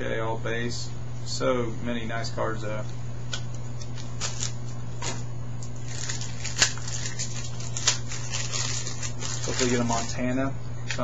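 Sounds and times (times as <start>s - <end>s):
cards scuffing and rustling: 3.3s - 5.3s.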